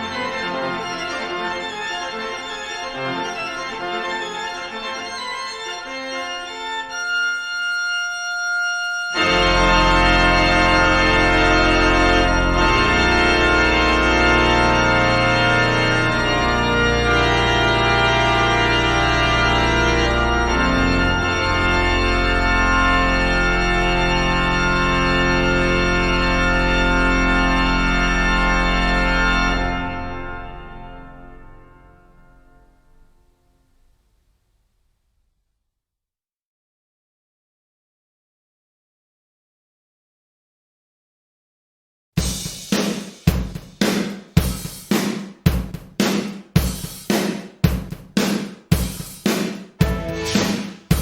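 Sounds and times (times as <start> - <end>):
organ chords: 0.0 - 33.4, 42.2 - 51.0.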